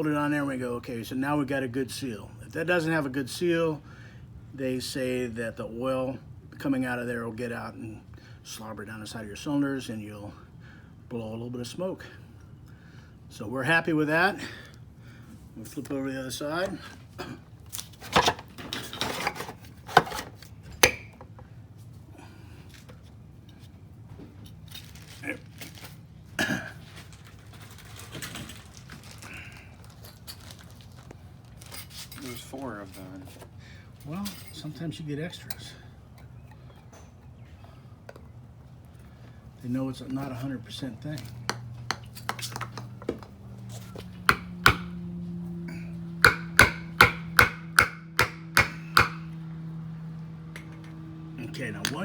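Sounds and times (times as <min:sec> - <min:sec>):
steady low hum: 0:32.5 - 0:52.0
hammer strikes on metal: 0:44.3 - 0:44.9, 0:46.2 - 0:49.3.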